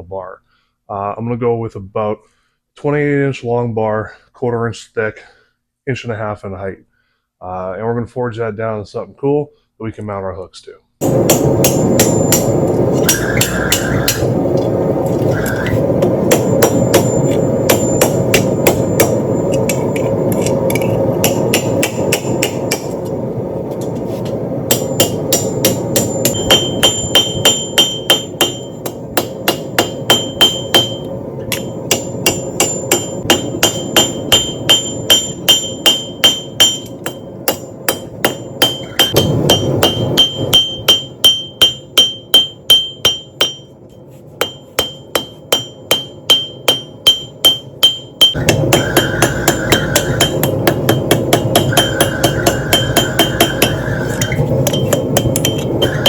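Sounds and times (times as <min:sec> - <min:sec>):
hammer striking steel on anvil: 0:11.0 - 0:14.7, 0:15.4 - 0:23.2, 0:24.7 - 0:43.8, 0:44.4 - 0:56.0
steady low roar: 0:51.6 - 0:54.7.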